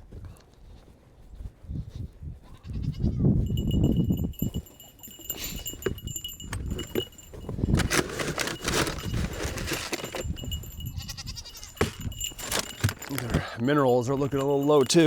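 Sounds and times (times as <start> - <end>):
metal jangling and clinking: 3.4 - 15.0
rustling and scuffing handling: 3.6 - 15.0.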